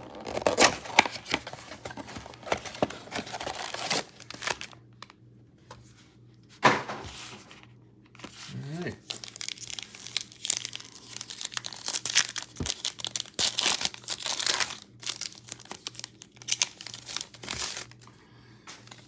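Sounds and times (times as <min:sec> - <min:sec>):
packaging crinkling and tearing: 0:00.0 - 0:05.1, 0:08.2 - 0:18.1.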